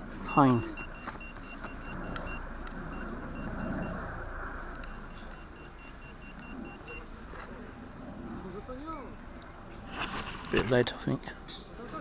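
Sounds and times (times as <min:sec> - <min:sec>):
metal detector beeps: 0:00.2 - 0:07.1
rustling noise: 0:09.7 - 0:10.7.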